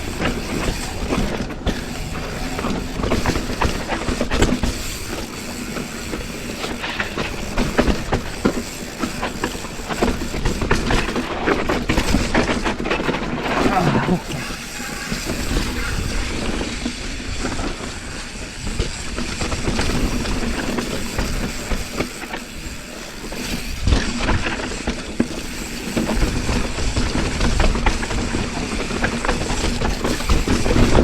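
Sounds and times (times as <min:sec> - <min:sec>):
tyres rumbling over dirt: 0:00.0 - 0:16.5
bike rattling over bumps: 0:00.0 - 0:31.0.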